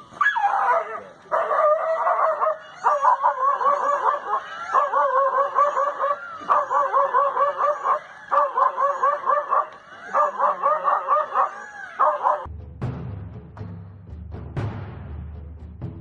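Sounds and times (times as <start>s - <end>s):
animal yelping: 0.0s - 12.5s.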